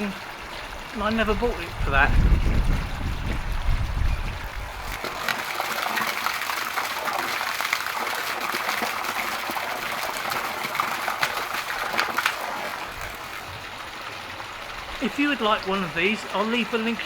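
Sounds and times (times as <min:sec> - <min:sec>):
water gushing from hose: 0:00.0 - 0:17.0
low rumble: 0:01.6 - 0:04.9.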